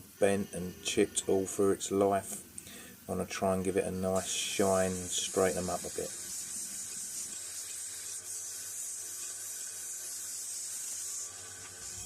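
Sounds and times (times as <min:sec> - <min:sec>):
belt sander grinding metal: 0:04.1 - 0:12.0.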